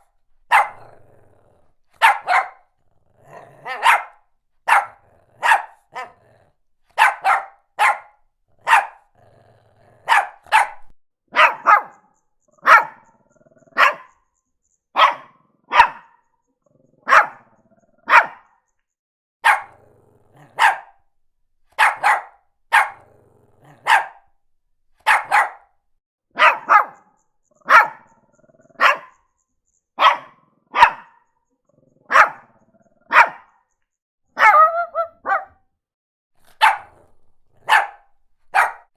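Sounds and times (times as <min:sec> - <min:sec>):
small dog barking: 0:00.0 - 0:12.0, 0:12.6 - 0:13.1, 0:13.7 - 0:14.2, 0:15.0 - 0:16.2, 0:17.1 - 0:18.6, 0:19.4 - 0:21.1, 0:21.7 - 0:24.4, 0:25.0 - 0:25.7, 0:26.4 - 0:28.1, 0:28.8 - 0:29.2, 0:30.0 - 0:31.2, 0:32.1 - 0:33.6, 0:34.4 - 0:35.6, 0:36.4 - 0:38.9.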